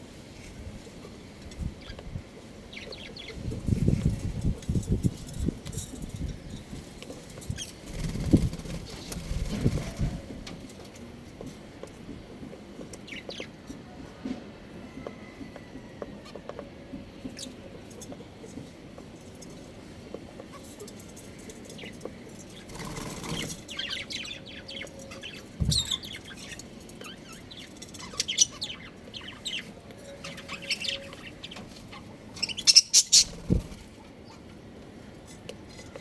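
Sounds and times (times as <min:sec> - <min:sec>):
wings fluttering: 0:07.4 - 0:10.6, 0:22.6 - 0:23.9, 0:32.4 - 0:34.0
budgerigars chirping: 0:28.0 - 0:33.6.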